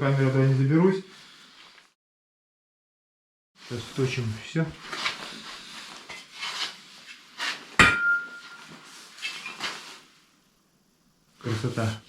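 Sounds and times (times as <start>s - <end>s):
sharp metallic clank: 7.8s - 8.7s.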